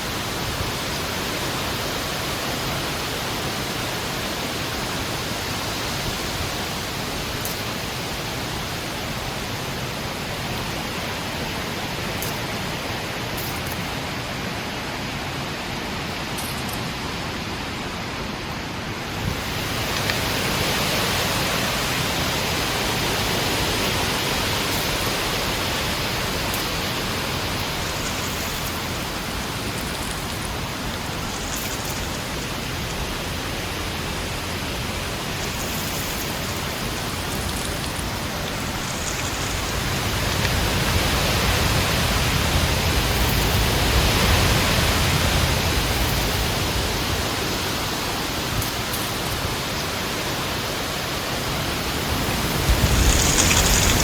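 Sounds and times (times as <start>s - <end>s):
heavy wind blowing: 17.2s - 54.0s.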